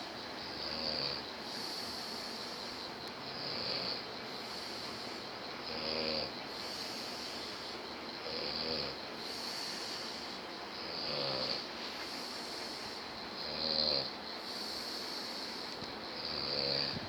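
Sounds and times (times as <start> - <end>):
man snoring: 0.6 - 2.5, 3.3 - 4.8, 5.6 - 7.4, 8.2 - 10.1, 10.8 - 11.7, 13.4 - 15.3, 16.2 - 17.0.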